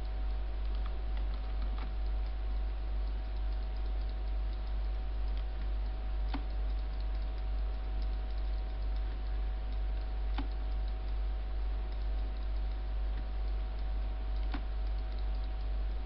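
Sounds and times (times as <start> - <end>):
faint ticks: 0.0 - 16.0
low electrical hum: 0.0 - 16.0
computer mouse clicks: 0.3 - 2.4, 3.0 - 15.8.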